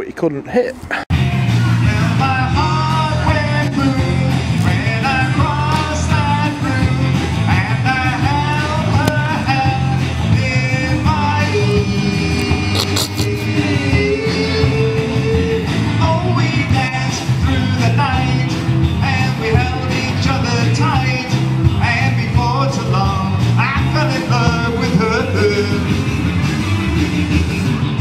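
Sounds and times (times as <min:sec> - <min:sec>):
loud rock music: 0:01.1 - 0:28.0.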